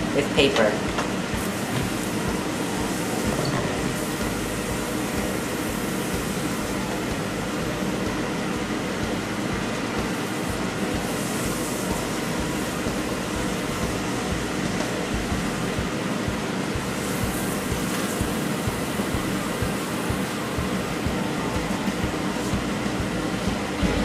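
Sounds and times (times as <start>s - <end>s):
potatoes sizzling in hot oil: 16.8s - 20.6s.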